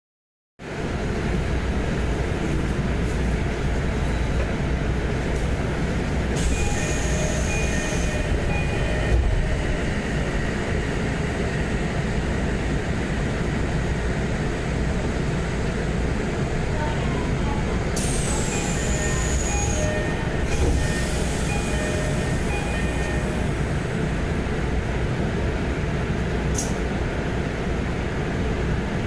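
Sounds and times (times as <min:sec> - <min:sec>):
train rumble: 0:00.6 - 0:29.0
train door chime: 0:06.4 - 0:09.8, 0:18.0 - 0:23.5
hiss of air from door: 0:18.0 - 0:18.6.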